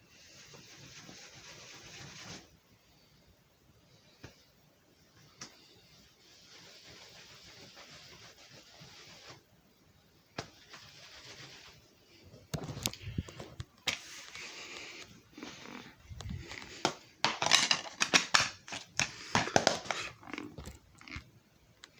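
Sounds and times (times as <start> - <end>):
rustling: 10.4 - 21.2
handling clicks and knocks: 16.2 - 20.8.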